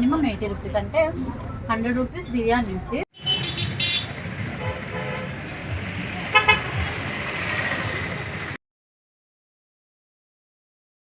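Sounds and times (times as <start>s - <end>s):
road traffic: 0.0s - 8.6s
vehicle horns tooting: 3.1s - 8.6s.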